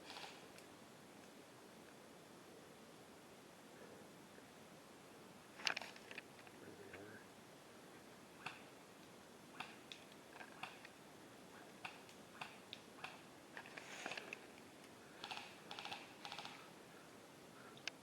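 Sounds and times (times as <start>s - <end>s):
background hiss: 0.0s - 18.0s
small clicks and crackles: 5.6s - 7.1s.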